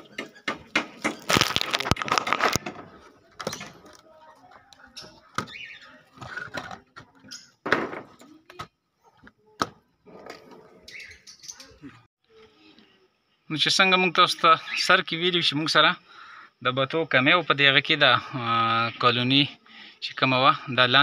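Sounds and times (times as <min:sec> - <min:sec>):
lovebirds chirping and squealing: 0:03.4 - 0:04.0, 0:04.8 - 0:07.7, 0:10.2 - 0:12.1.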